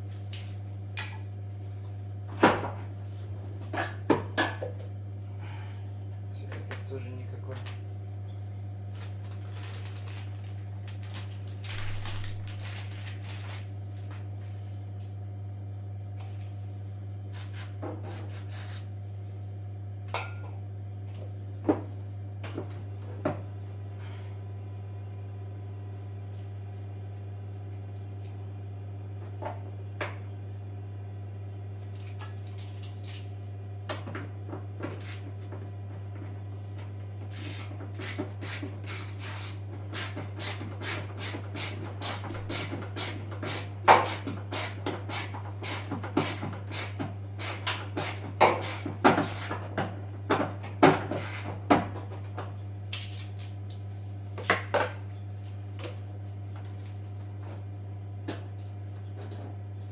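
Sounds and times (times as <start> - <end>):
steady low hum: 0.0 - 40.0
tools and metal parts clinking: 1.0 - 1.3, 32.0 - 33.3, 52.9 - 54.8.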